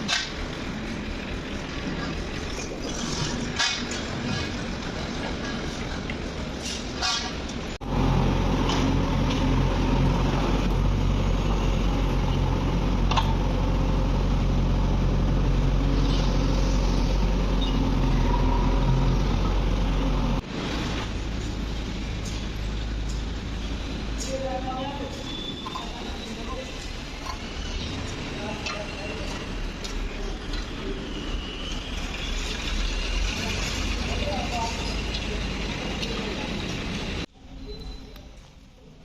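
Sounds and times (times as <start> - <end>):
heavy machine engine humming: 7.6 - 24.2.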